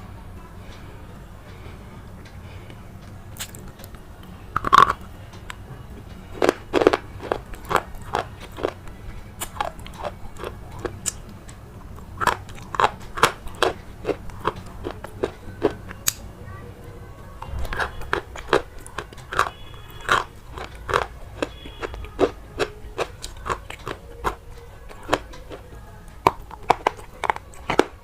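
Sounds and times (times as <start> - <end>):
brittle crunching: 3.4 - 5.6, 6.3 - 8.8, 9.4 - 11.2, 12.0 - 16.3, 17.4 - 25.6, 26.2 - 28.0.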